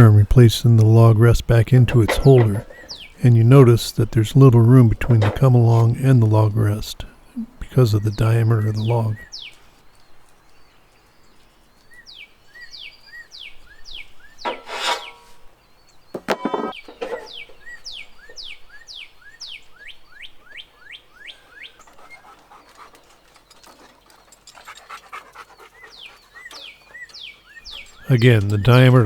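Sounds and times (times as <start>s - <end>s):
bird chirping: 0.0s - 29.0s
metal clanks: 1.9s - 3.2s, 4.9s - 6.0s, 14.4s - 15.4s, 16.2s - 18.4s.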